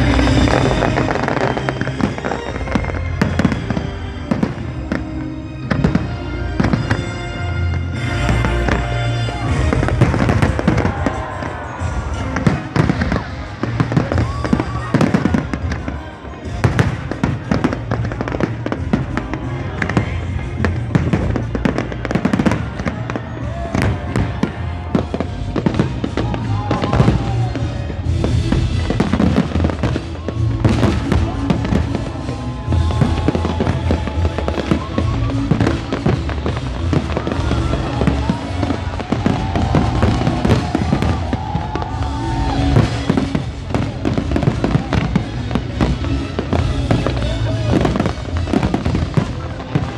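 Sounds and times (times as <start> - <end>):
fireworks bangs and crackles: 0.0 - 49.9
music with heavy bass: 16.5 - 49.9.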